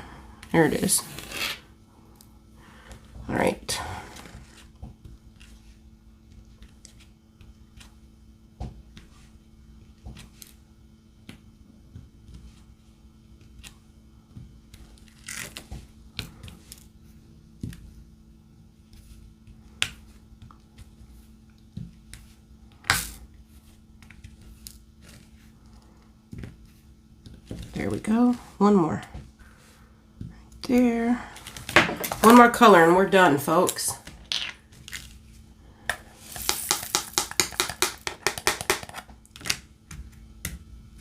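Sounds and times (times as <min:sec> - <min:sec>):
faint steady hum: 0:00.0 - 0:41.0
pen clicking and tapping: 0:36.4 - 0:39.0.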